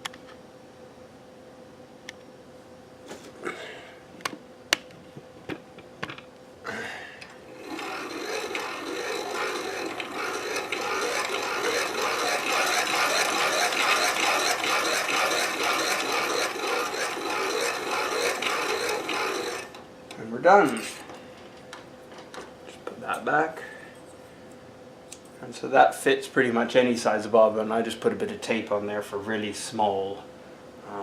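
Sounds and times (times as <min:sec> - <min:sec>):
bobbin winder gears rattling: 0:07.5 - 0:19.8.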